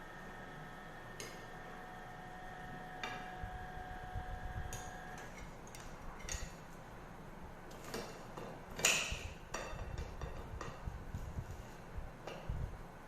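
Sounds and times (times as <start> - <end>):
tableware clicks and taps: 8.4 - 10.8.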